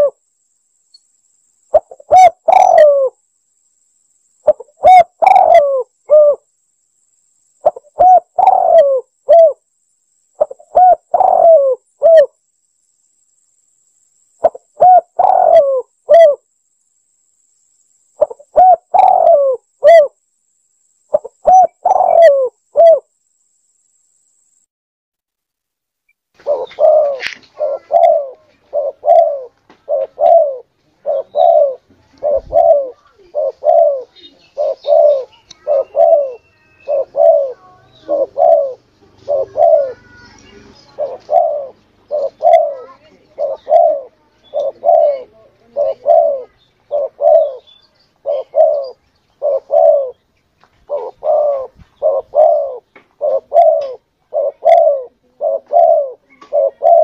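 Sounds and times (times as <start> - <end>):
dove cooing: 0.0 - 0.2, 1.7 - 3.2, 4.4 - 6.4, 7.6 - 9.6, 10.4 - 12.3, 14.4 - 16.4, 18.2 - 20.2, 21.1 - 23.1, 26.4 - 50.2, 50.8 - 57.0.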